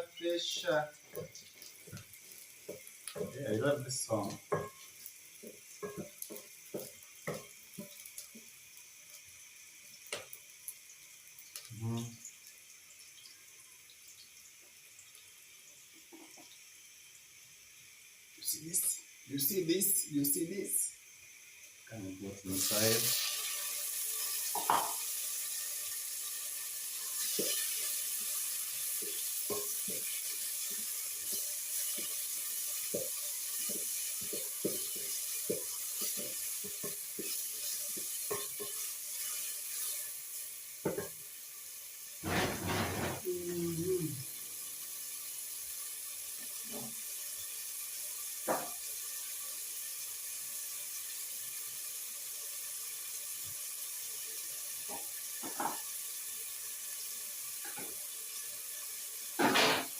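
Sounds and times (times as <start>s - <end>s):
food sizzling in a pot: 0.0s - 59.9s
spoon stirring against pot: 27.1s - 38.9s.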